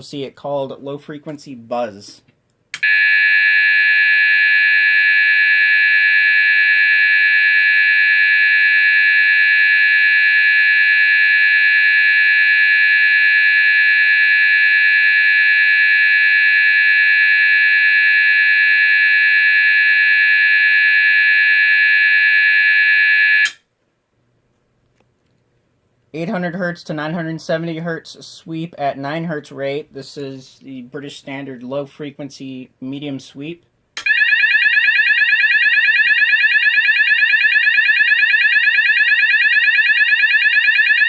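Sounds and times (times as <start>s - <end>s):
alarm sounder low buzz: 2.8s - 23.6s, 34.0s - 41.0s.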